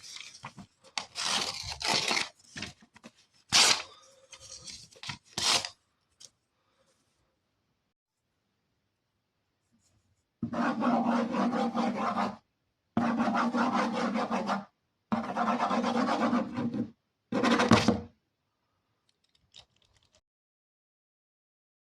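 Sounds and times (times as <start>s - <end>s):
rough rasping scrape: 10.4s - 12.4s, 13.0s - 14.6s, 15.2s - 16.8s.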